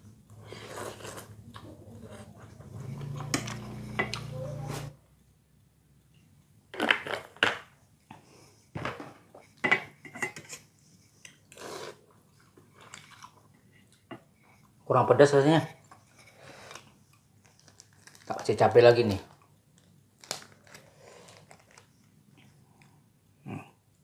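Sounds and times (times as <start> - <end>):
cutlery scraping against a bowl: 2.1 - 4.9, 9.6 - 11.4.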